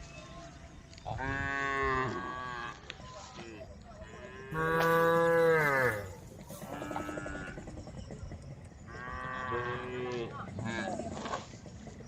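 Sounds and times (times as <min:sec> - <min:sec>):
cows mooing: 0:04.4 - 0:07.6.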